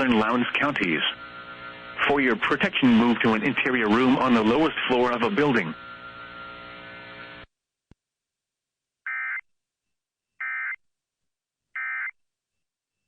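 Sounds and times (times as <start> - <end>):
steady hum: 0.0 - 7.5.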